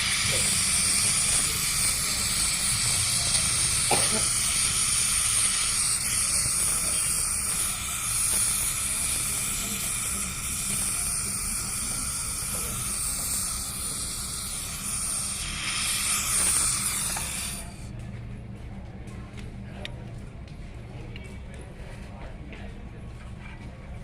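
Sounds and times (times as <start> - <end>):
pressurized gas hissing: 0.0 - 17.9.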